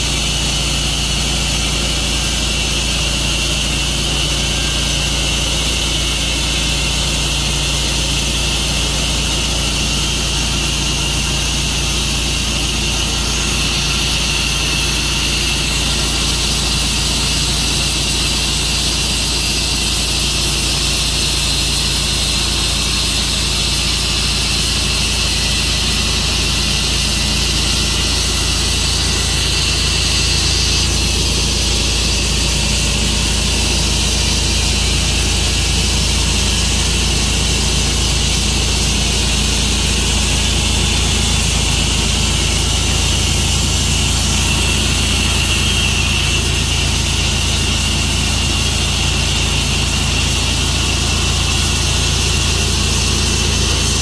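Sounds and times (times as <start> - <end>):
sawmill engine hum: 0.0 - 54.0.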